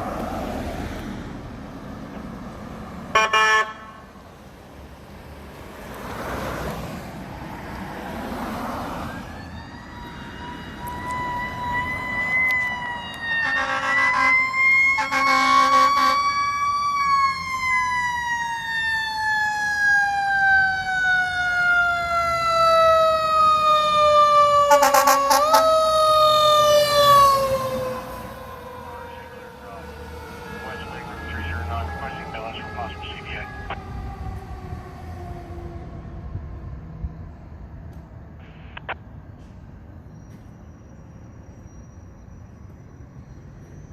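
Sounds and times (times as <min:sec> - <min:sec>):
truck air horn blasts: 0:03.2 - 0:04.0, 0:13.4 - 0:14.4, 0:15.0 - 0:16.2
fire engine siren wailing: 0:08.7 - 0:37.4.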